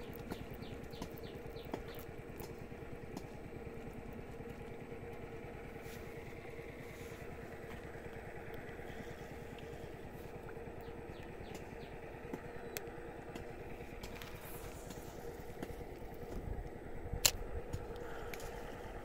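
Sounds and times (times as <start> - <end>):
small engine running: 0.0 - 19.0.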